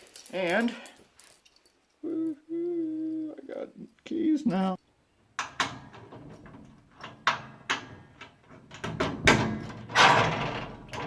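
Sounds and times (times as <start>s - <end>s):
lock clicking: 5.4s - 11.0s
sheet-metal door rattling: 5.4s - 11.0s.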